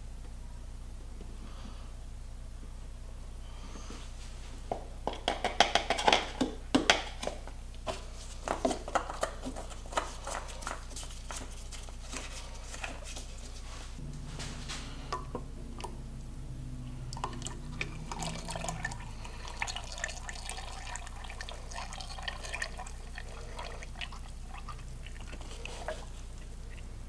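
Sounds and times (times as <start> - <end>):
liquid dripping and pouring: 17.1 - 27.0.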